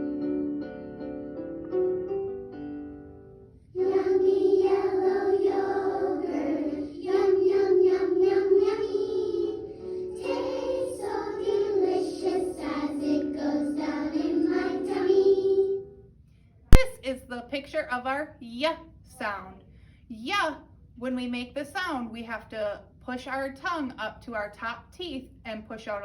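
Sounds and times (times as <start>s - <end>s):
instrumental backing music: 0.0s - 4.8s
children singing: 3.8s - 15.8s.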